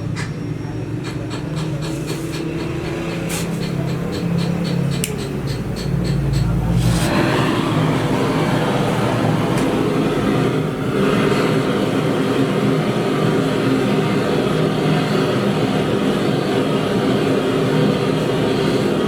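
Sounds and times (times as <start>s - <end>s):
machine humming: 0.0s - 19.0s.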